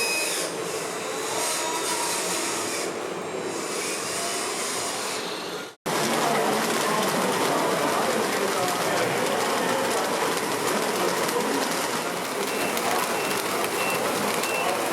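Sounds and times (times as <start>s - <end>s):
whirring hissing machine: 0.0s - 5.8s.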